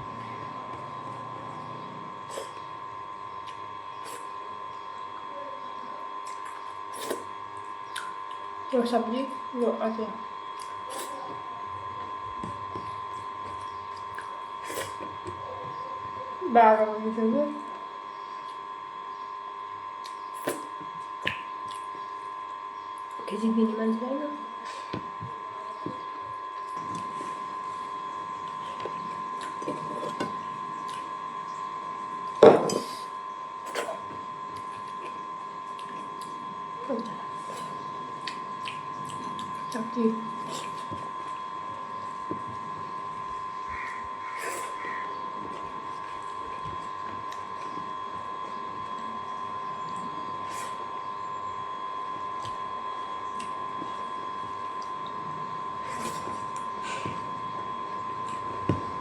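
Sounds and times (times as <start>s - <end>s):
steady high hum: 0.0s - 59.0s.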